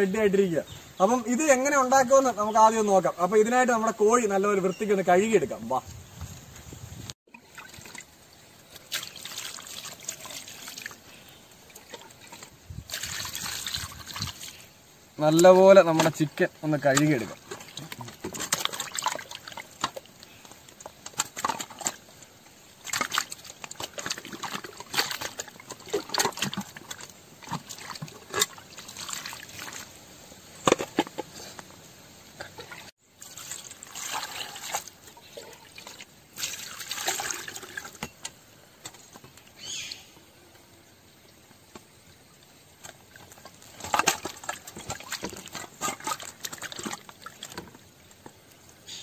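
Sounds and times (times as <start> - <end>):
water splashing and sloshing: 6.4 - 31.3, 32.4 - 39.6, 41.4 - 48.9
water trickling and dripping: 7.3 - 30.4, 32.4 - 38.5, 41.0 - 48.9.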